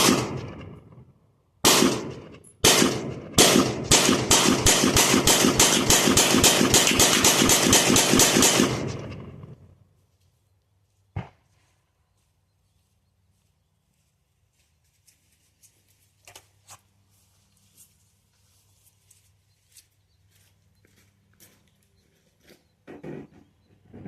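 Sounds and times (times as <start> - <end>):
sharp gunshot crack: 0.0 - 0.8, 1.6 - 9.3
gunfire echo: 0.0 - 1.0, 1.6 - 9.6.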